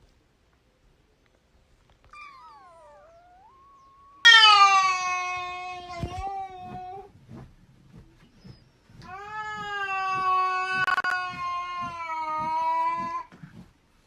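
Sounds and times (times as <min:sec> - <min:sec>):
cat meowing: 0:02.1 - 0:07.1, 0:09.0 - 0:13.3.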